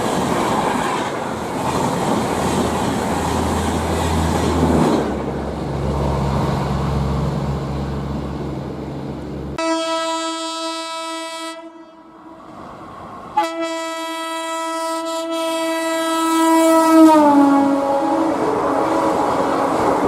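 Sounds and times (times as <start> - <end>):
rumble of passing train: 0.0 - 20.0
locomotive horn blasts: 9.6 - 12.2, 13.4 - 18.4.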